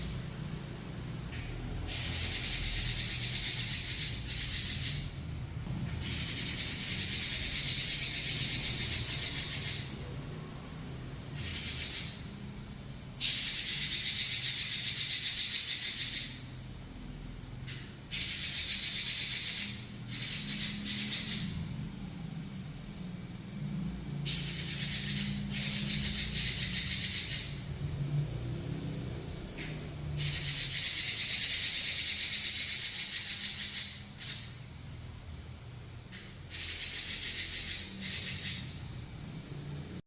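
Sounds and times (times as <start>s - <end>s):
bird singing rattling trills: 0.0s - 0.4s, 1.6s - 5.3s, 5.9s - 10.1s, 11.3s - 16.6s, 17.6s - 21.8s, 24.0s - 27.9s, 29.5s - 34.7s, 36.1s - 39.0s
steady low hum: 0.0s - 40.0s.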